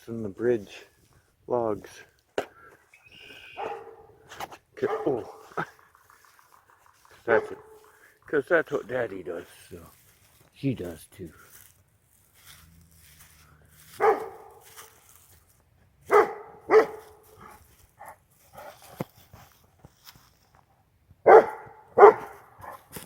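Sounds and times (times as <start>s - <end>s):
dog barking: 3.6s - 4.2s, 4.8s - 5.5s, 7.3s - 7.8s, 13.9s - 14.9s, 16.1s - 18.8s, 21.2s - 22.8s.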